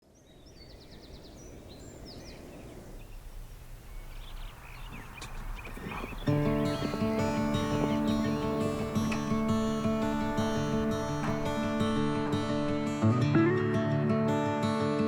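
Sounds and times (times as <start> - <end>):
small birds chirping: 0.0 - 13.0
low rumbling background: 3.4 - 13.0.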